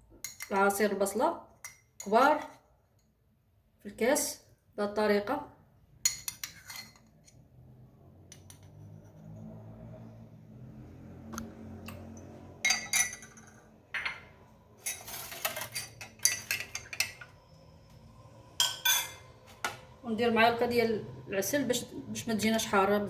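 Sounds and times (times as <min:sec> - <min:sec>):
metal spoon clinking against glass: 0:06.1 - 0:07.4, 0:11.9 - 0:14.2, 0:14.8 - 0:17.2, 0:18.6 - 0:19.2.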